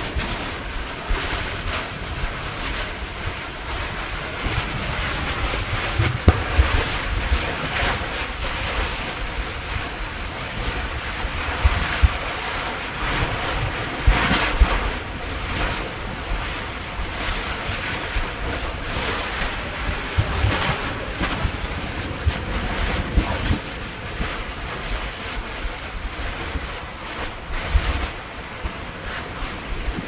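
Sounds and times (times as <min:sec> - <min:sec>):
ocean surf: 0:00.0 - 0:30.0
wind buffeting microphone: 0:00.0 - 0:30.0
low thumps: 0:06.0 - 0:07.3.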